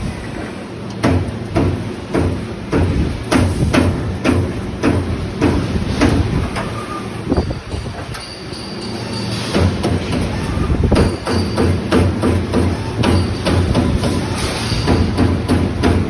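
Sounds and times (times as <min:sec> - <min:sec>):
punch press metal strikes: 0:09.4 - 0:16.0.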